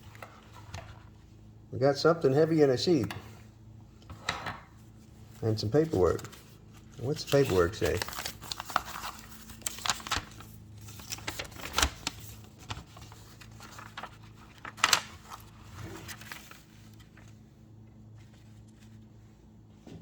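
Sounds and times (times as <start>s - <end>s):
paper rustling: 0.0s - 1.2s, 5.0s - 17.4s
steady low hum: 0.0s - 20.0s.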